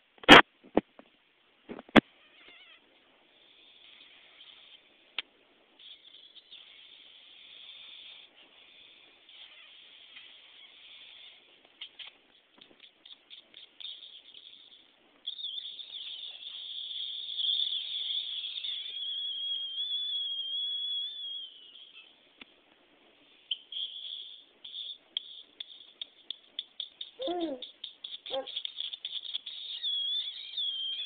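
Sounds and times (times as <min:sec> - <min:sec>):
chirps and clicks: 0:11.7 - 0:22.1, 0:23.5 - 0:31.0
person squealing at pet: 0:27.2 - 0:27.7.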